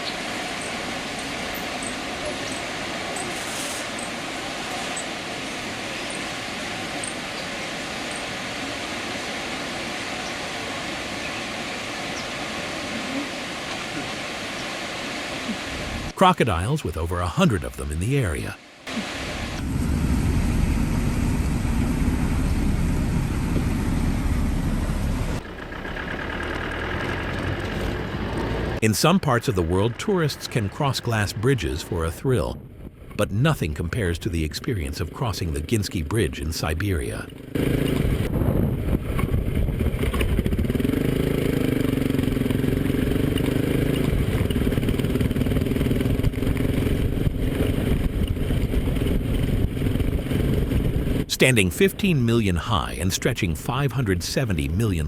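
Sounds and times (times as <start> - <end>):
quieter running sound: 15.7 - 25.8, 37.5 - 55.0
vehicle engine rumble: 18.9 - 28.9, 37.3 - 51.3.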